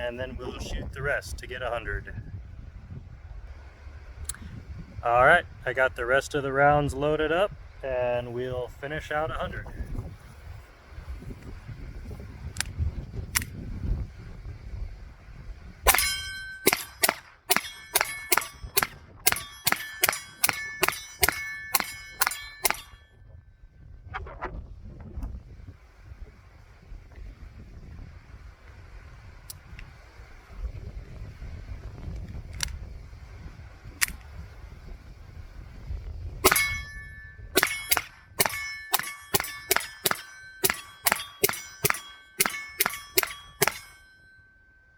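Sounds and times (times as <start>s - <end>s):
wind rumble on microphone: 0.0s - 38.6s
pistol shots: 15.9s - 22.9s, 36.4s - 44.0s
short metallic ring: 15.9s - 23.3s, 36.4s - 44.9s.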